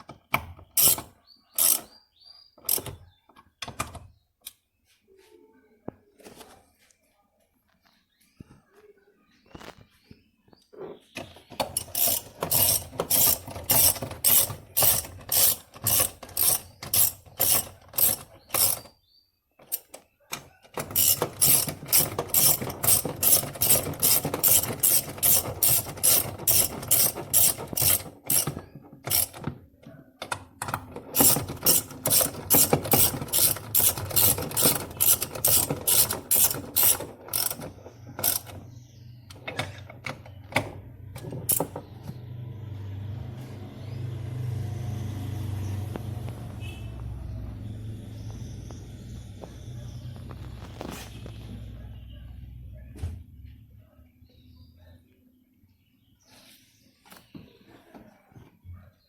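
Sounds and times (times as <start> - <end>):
ratchet wrench clicking: 0.8 - 1.9, 11.8 - 18.8, 20.9 - 29.4, 31.2 - 37.6, 38.2 - 38.5.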